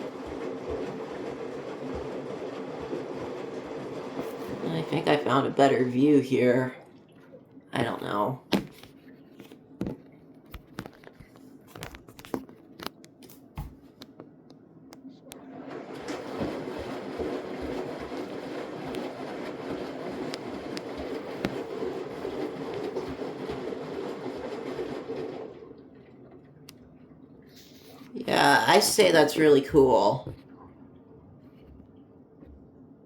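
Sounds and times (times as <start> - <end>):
water rushing: 0.0 - 8.3, 15.4 - 25.9, 28.2 - 30.3
motor hum: 0.0 - 11.9, 15.0 - 32.8.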